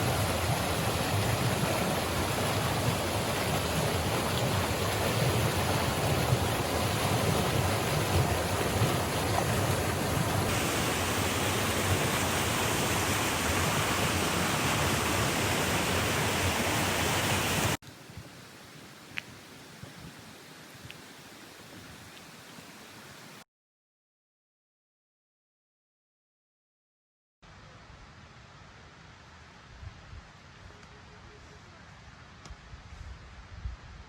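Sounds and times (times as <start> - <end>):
mountain stream rushing over rocks: 0.0 - 17.8.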